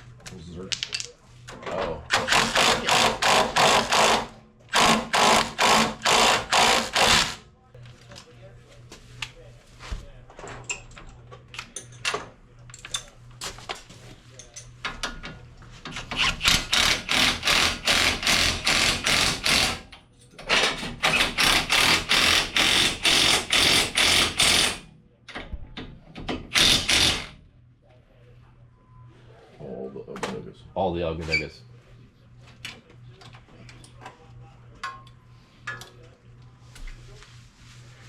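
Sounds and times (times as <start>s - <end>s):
impact wrench hammering: 2.1s - 7.4s, 16.2s - 19.8s, 21.0s - 24.8s, 26.4s - 27.3s.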